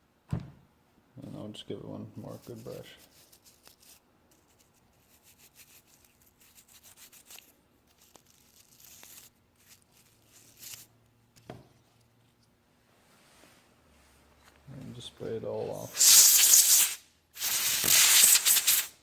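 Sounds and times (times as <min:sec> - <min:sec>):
knock: 0:00.3 - 0:00.6.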